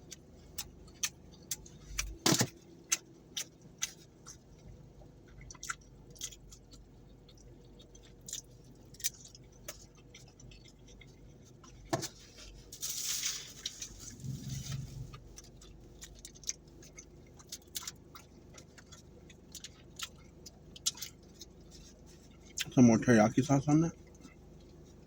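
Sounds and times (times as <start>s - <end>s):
chewing: 0.0s - 12.7s, 13.5s - 22.8s, 23.9s - 25.0s
short low hum: 13.1s - 16.0s.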